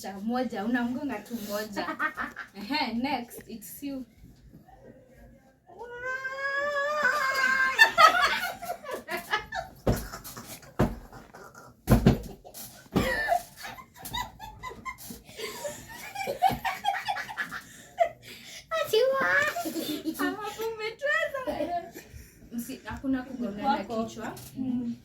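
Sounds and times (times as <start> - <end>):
people laughing: 6.9 - 11.6, 13.0 - 18.2
dull pillow thumps: 9.8 - 11.2, 11.8 - 13.2.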